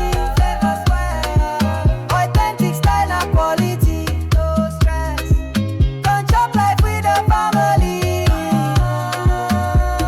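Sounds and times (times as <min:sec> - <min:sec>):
afrobeat instrumental music: 0:00.0 - 0:10.0.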